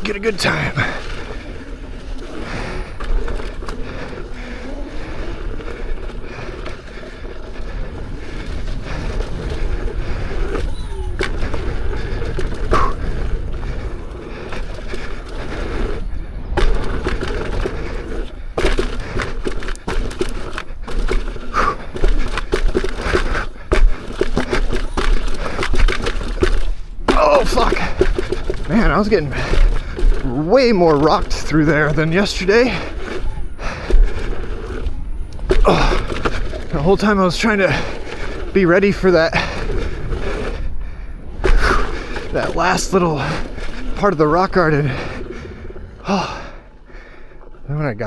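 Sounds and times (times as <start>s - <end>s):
tyre rolling over rocky trail: 0.0s - 48.0s.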